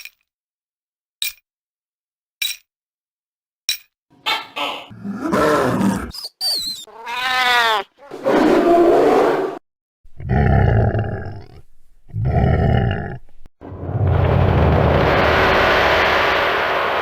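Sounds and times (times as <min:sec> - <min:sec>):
pitched cry: 0:04.2 - 0:08.9
deep dragon roars: 0:04.9 - 0:06.1, 0:10.2 - 0:13.2
dragon growl: 0:04.9 - 0:06.2, 0:10.2 - 0:15.9.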